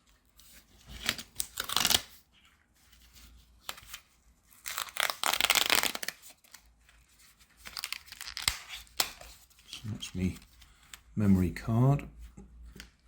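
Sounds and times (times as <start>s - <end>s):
packaging tearing and crinkling: 1.0s - 2.2s, 4.5s - 6.6s, 7.6s - 9.2s.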